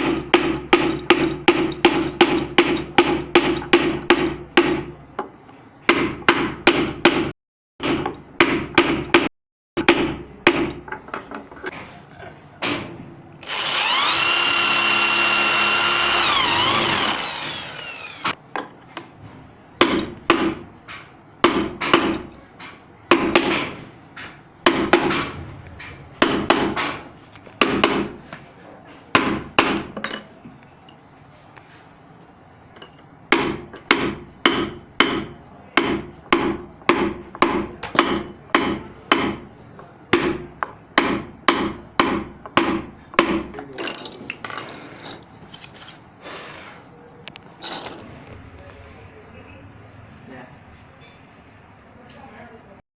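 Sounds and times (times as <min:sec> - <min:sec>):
power router whining: 0:13.4 - 0:18.4.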